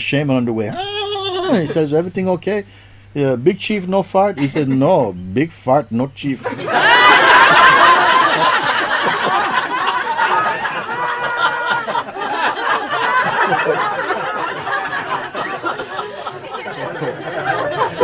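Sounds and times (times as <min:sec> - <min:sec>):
group of people laughing: 0:04.4 - 0:04.9, 0:06.4 - 0:18.0.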